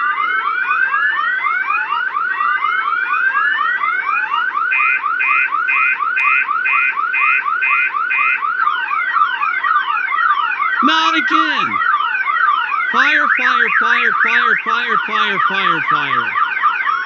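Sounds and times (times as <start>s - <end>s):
long rising alarm wails: 0.0s - 17.0s
steady alarm beeping: 10.6s - 17.0s
fast rising alarm chirps: 10.8s - 11.9s, 12.9s - 16.4s.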